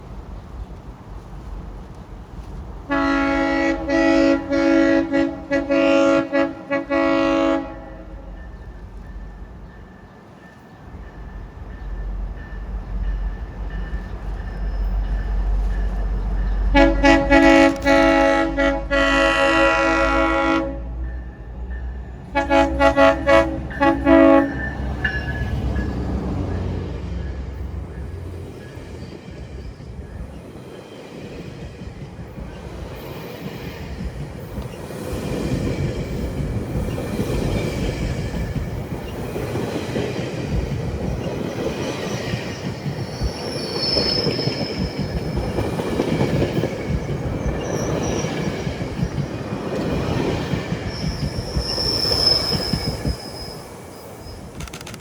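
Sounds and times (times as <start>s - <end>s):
train wheels rumbling on rail: 0.0s - 55.0s
high wheel squeals: 42.0s - 46.0s, 46.6s - 49.2s, 50.0s - 55.0s.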